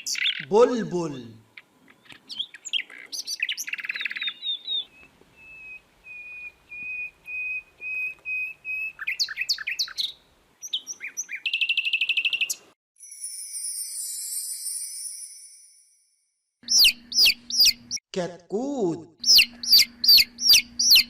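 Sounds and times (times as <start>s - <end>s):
bulbul song: 16.6s - 18.0s, 19.2s - 21.0s.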